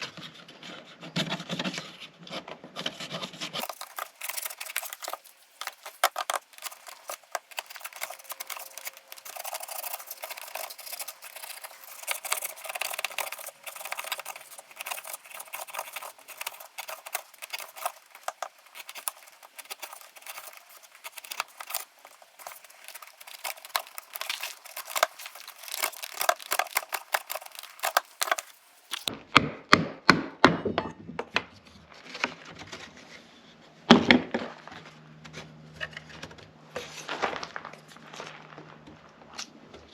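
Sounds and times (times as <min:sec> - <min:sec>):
hand tool scraping wood: 0:00.0 - 0:29.1.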